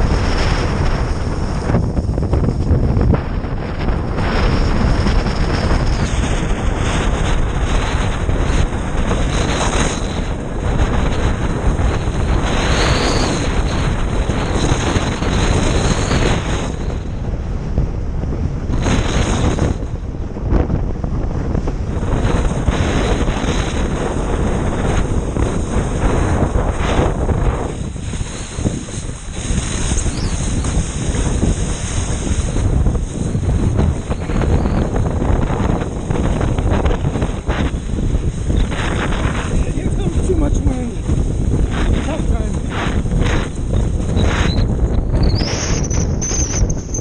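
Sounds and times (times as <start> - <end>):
water rushing under board: 0.0 - 47.0
wind buffeting microphone: 0.0 - 47.0.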